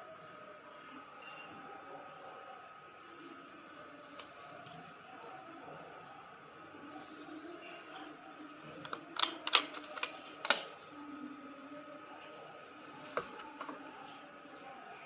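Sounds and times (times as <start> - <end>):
faint steady hum: 0.0 - 15.0
clicks and knocks of handling: 8.8 - 10.8, 13.0 - 14.0.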